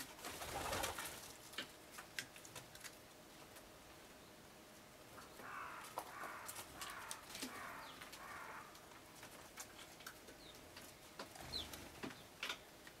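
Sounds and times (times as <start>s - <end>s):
birds calling: 5.1s - 9.0s, 10.3s - 12.7s.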